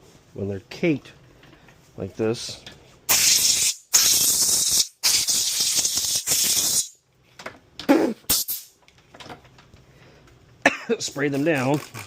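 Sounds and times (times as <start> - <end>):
aerosol spray can hissing: 3.1 - 7.0, 8.3 - 8.7.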